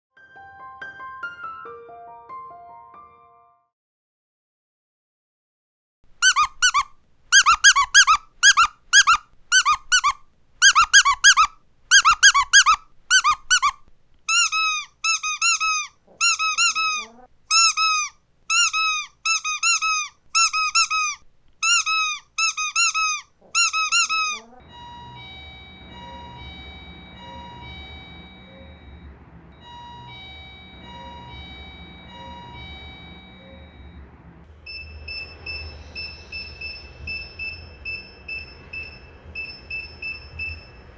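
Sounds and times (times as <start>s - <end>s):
squeaky dog toy squeaking: 6.2s - 29.0s, 34.7s - 40.9s
low hum: 24.4s - 40.9s
electronic chime melody: 24.6s - 40.9s.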